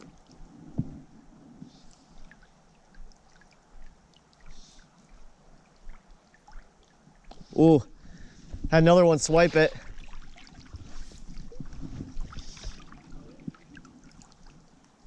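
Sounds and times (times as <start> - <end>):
small water drips: 0.0 - 0.5, 1.7 - 7.9, 9.7 - 15.0
creek water trickling: 0.0 - 15.0
short water splashes: 1.8 - 7.6, 8.6 - 15.0.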